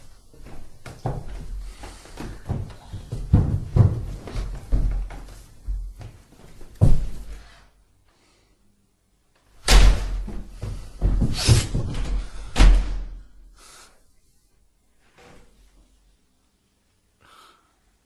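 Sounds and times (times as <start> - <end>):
heavy door slamming: 9.6 - 13.2.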